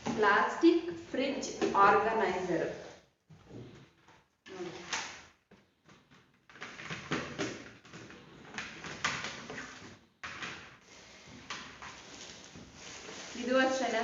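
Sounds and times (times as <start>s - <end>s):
plastic packaging rustling: 4.6s - 14.0s.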